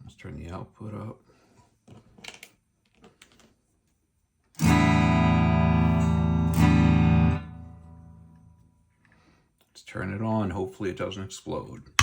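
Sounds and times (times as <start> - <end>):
electric guitar chord strummed: 4.6 - 8.4.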